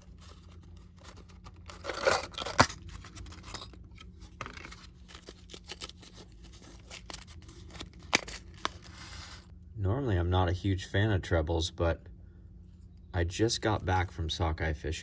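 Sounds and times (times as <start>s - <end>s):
packaging rustling: 0.0s - 9.5s
steady low hum: 0.0s - 15.0s.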